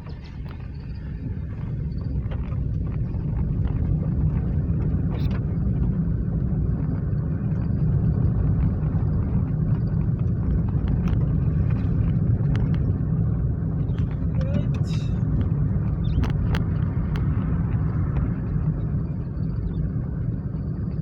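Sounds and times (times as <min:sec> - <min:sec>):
car road and engine rumble: 0:00.0 - 0:21.0.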